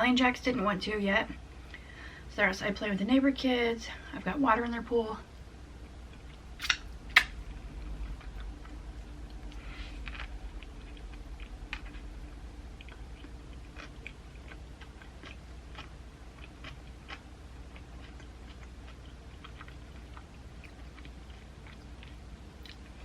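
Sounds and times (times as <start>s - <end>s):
faint low hum: 0.0s - 23.0s
person chewing food: 5.8s - 23.0s.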